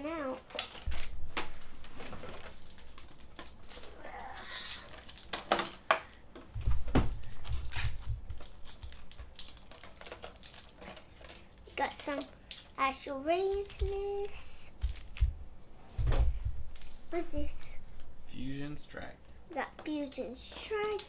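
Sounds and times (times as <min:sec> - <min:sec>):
foil packs rustling: 0:00.0 - 0:15.4, 0:16.2 - 0:18.8, 0:19.6 - 0:21.0
dull bumps: 0:06.6 - 0:08.5, 0:13.6 - 0:18.3
cardboard clicks and taps: 0:13.4 - 0:15.4.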